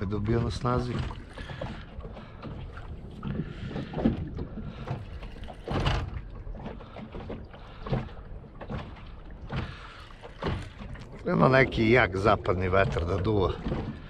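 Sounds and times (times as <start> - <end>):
low rumble of wind: 0.0 - 14.0
waves slapping against boat hull: 0.0 - 14.0.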